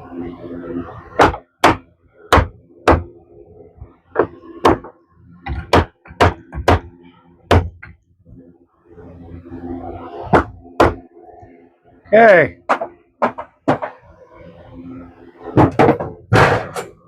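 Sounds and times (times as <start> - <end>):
hammer striking wood: 1.2 - 3.1, 4.2 - 4.9, 5.5 - 6.9, 7.5 - 8.0, 10.3 - 11.0, 12.7 - 14.0.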